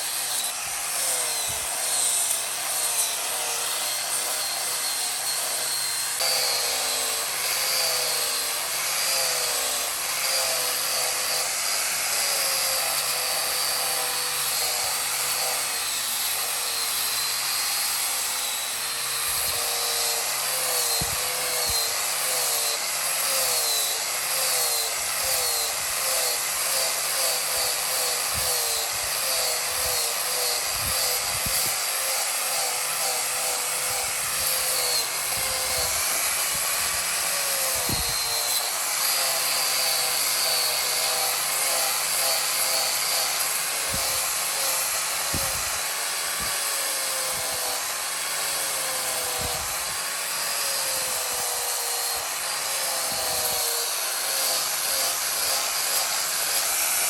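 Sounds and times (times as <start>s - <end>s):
power tool whining on wood: 0.0s - 57.0s.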